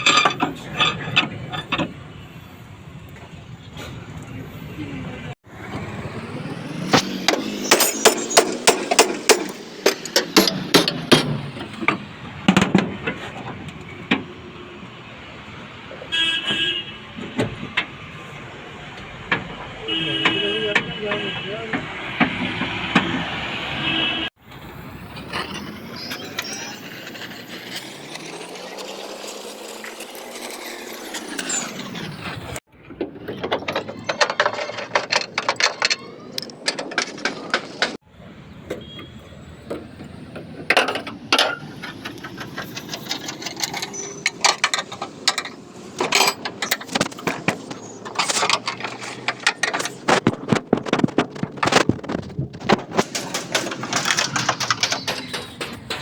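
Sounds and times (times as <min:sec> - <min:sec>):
noisy pitch sweep: 0:05.5 - 0:11.8.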